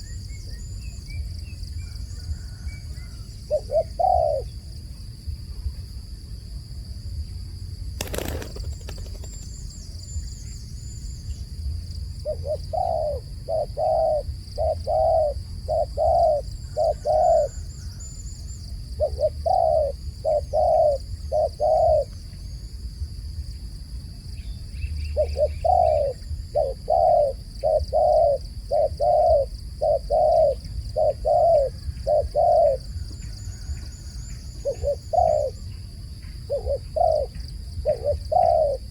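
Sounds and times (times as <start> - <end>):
dove cooing: 2.3 - 4.6, 12.2 - 17.8, 19.0 - 22.1, 25.1 - 33.0, 33.6 - 35.7, 36.4 - 38.9.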